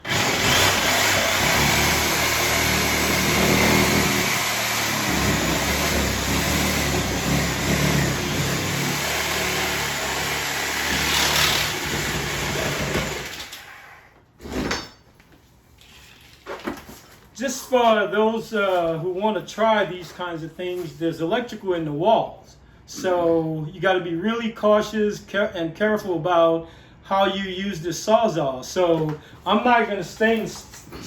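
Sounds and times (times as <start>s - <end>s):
reciprocating saw cutting drywall: 0.0s - 14.0s.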